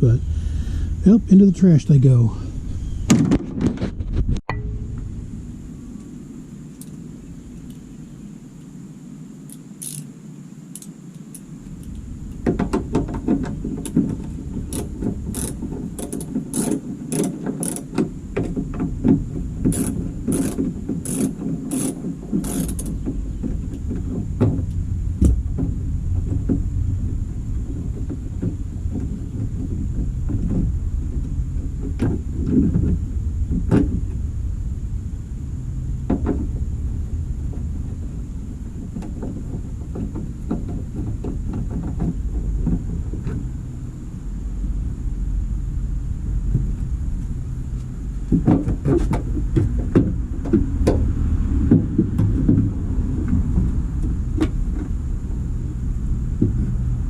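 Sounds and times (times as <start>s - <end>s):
steady low rumble: 0.0s - 57.0s
ratchet wrench clicking: 9.5s - 10.1s, 10.7s - 12.0s, 14.7s - 18.0s, 19.7s - 23.0s
scattered clicks and knocks: 10.8s - 34.1s, 38.7s - 43.5s, 47.8s - 55.0s.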